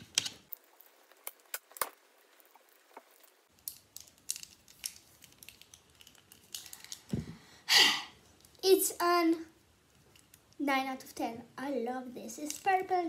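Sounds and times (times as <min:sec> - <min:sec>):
plastic toy clicking and rattling: 0:12.3 - 0:13.0.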